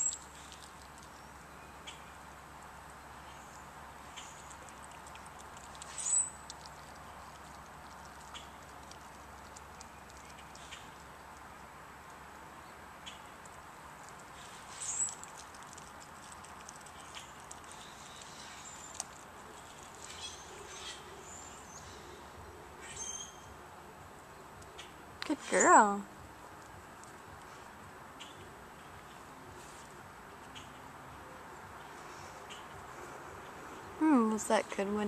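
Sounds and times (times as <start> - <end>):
dog chewing: 4.4 - 11.1, 13.5 - 20.4.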